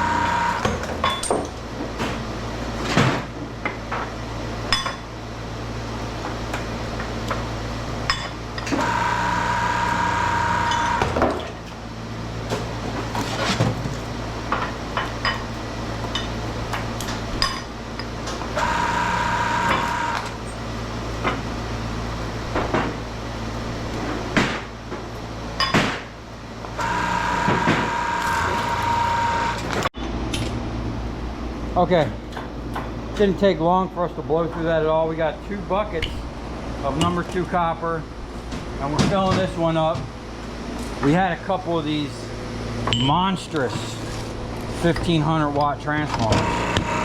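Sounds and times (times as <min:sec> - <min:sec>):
machine humming: 0:00.0 - 0:01.0, 0:07.6 - 0:12.4, 0:18.2 - 0:24.0, 0:26.1 - 0:29.9, 0:46.1 - 0:47.0
machine whining under load: 0:00.0 - 0:01.0, 0:08.6 - 0:11.3, 0:18.3 - 0:20.6, 0:26.6 - 0:29.9, 0:46.1 - 0:47.0.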